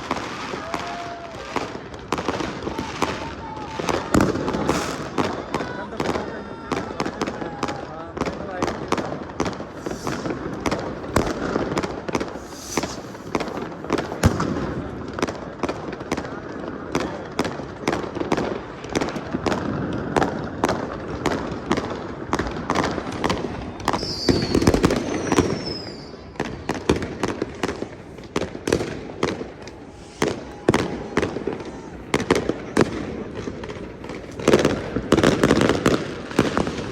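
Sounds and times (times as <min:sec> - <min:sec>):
fireworks bangs and crackles: 0:00.0 - 0:36.9
falling firework whistles: 0:02.7 - 0:05.4, 0:09.5 - 0:14.9, 0:23.2 - 0:27.1, 0:29.6 - 0:32.8.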